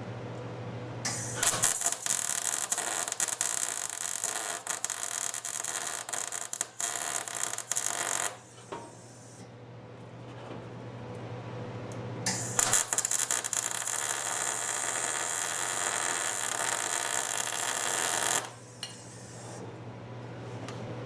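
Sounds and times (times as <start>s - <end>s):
welder crackling and sputtering: 1.1s - 8.6s, 12.3s - 19.5s.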